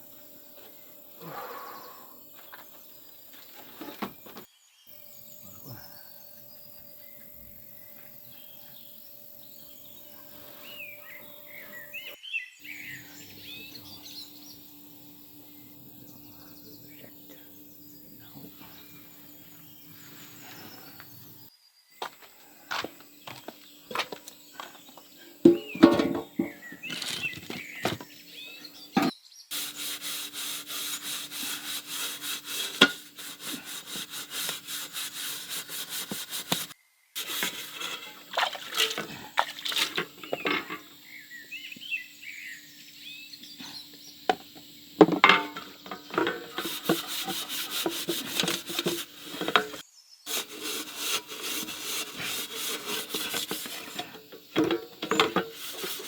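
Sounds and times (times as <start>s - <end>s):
fast scraping strokes: 29.5s - 39.0s, 45.9s - 56.0s.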